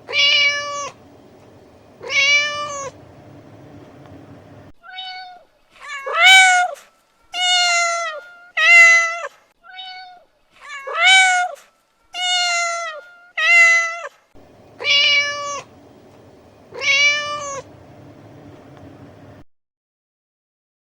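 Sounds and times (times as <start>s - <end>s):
cat meowing: 0.1s - 1.0s, 2.0s - 3.0s, 4.8s - 6.8s, 7.4s - 11.6s, 12.2s - 14.1s, 14.8s - 15.7s, 16.7s - 17.7s.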